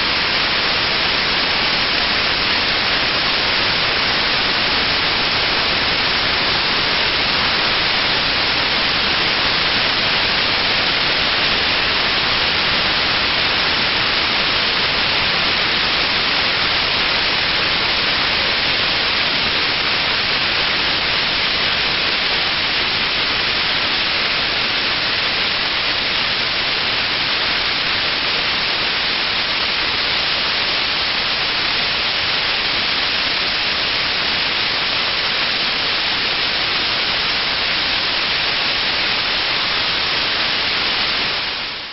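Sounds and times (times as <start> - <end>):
waterfall rushing: 0.0 - 41.9.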